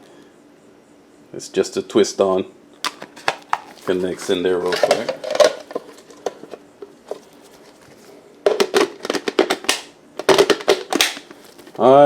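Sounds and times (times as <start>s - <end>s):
plastic parts clicking and knocking: 2.9s - 7.3s, 8.5s - 11.8s.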